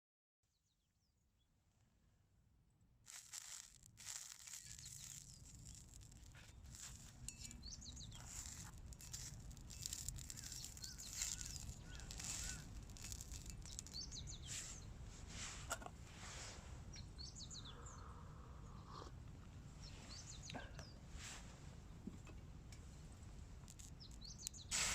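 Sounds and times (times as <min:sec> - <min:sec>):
small birds chirping: 0:03.1 - 0:15.0, 0:16.9 - 0:19.1, 0:19.7 - 0:21.0, 0:23.7 - 0:24.9
brief rustles: 0:03.1 - 0:15.9.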